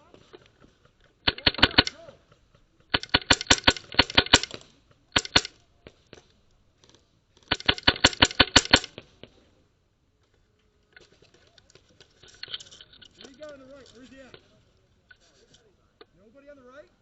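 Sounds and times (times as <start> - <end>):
airsoft rifle rapid fire: 1.2 - 2.1, 2.9 - 5.6, 7.5 - 9.2.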